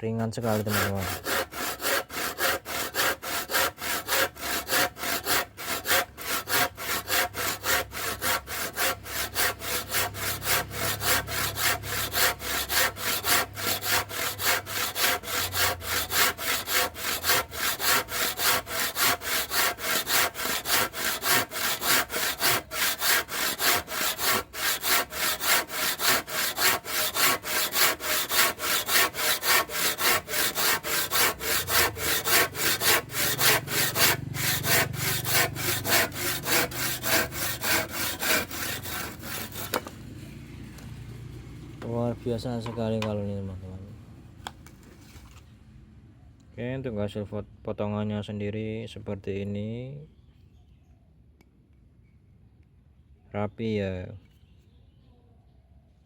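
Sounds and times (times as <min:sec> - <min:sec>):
hand saw cutting wood: 0:00.2 - 0:40.1.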